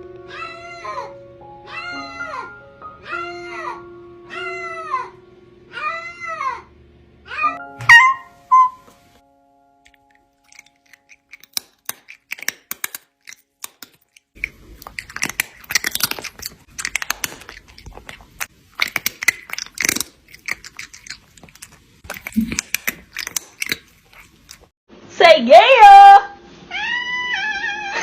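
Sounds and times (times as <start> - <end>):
crisp crunching and clicking: 9.9 - 24.7.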